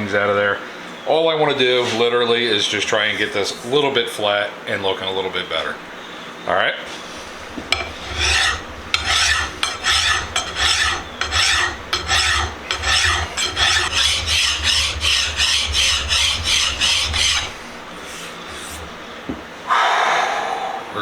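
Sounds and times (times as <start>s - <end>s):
hand file rasping on metal: 7.0s - 19.3s.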